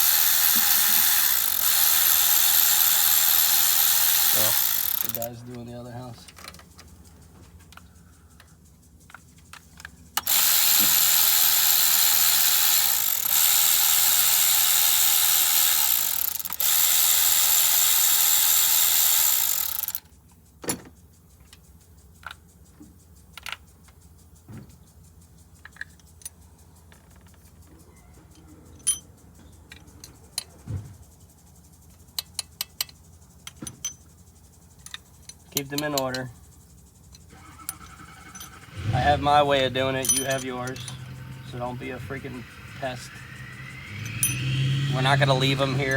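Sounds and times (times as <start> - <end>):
power ratchet running: 0.0 - 6.6, 9.1 - 20.1, 34.8 - 45.9
metal engine parts clinking: 0.0 - 22.4, 24.7 - 30.6, 32.2 - 34.2, 34.8 - 45.9.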